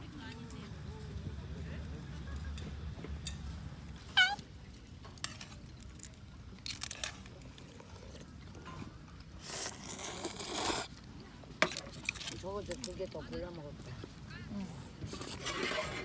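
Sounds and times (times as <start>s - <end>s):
small dog whining: 4.0s - 4.4s.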